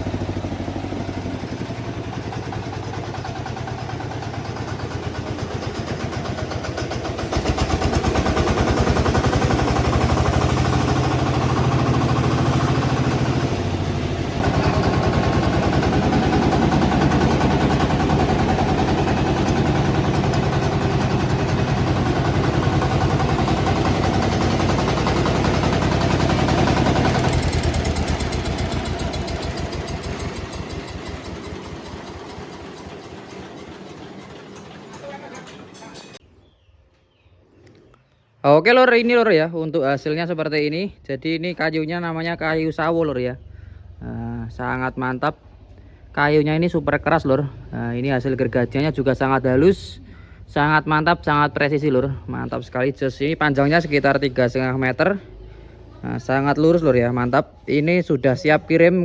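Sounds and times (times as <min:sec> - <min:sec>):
sawmill engine running: 0:00.0 - 0:36.2, 0:52.5 - 0:58.9.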